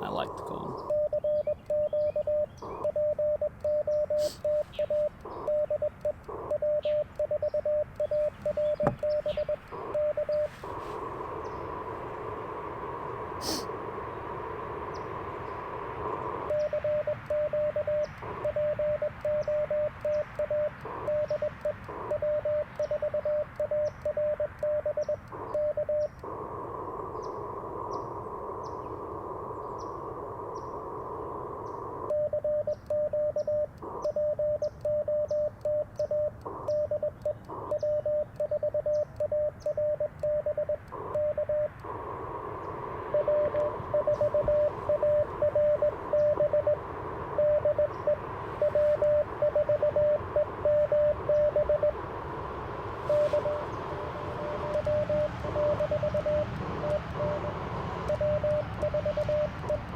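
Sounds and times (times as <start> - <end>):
morse code tone: 0.0 - 11.0, 16.3 - 26.1, 32.0 - 42.1, 43.0 - 52.1, 52.9 - 59.9
radio band hiss: 0.0 - 59.9.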